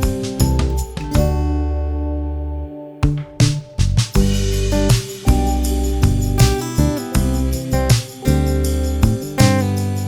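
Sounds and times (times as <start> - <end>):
music with bass line: 0.0 - 10.0
sharp drum hits: 3.0 - 8.4.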